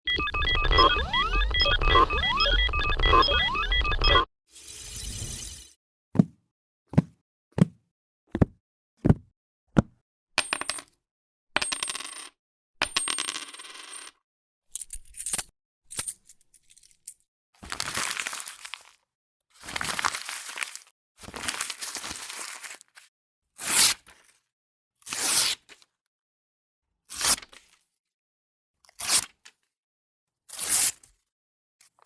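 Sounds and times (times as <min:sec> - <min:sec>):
clicks: 0:00.1 - 0:04.3
steady high tone: 0:00.1 - 0:05.6.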